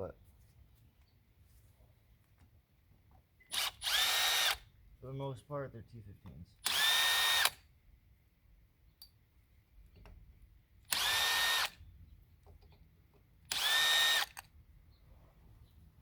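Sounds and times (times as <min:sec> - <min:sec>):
cordless drill whining: 0:03.5 - 0:04.7, 0:06.6 - 0:07.6, 0:10.9 - 0:11.8, 0:13.5 - 0:14.5.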